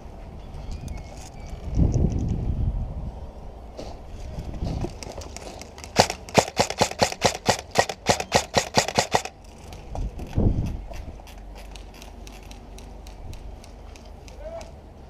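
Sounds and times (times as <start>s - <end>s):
airsoft rifle shots: 5.9s - 9.3s.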